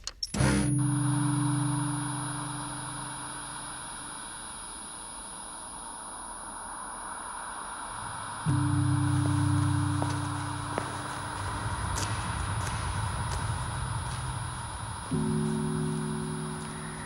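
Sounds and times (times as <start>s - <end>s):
high continuous whine: 0.7s - 17.0s
faint mid tone: 7.8s - 17.0s
low electrical hum: 7.9s - 17.0s.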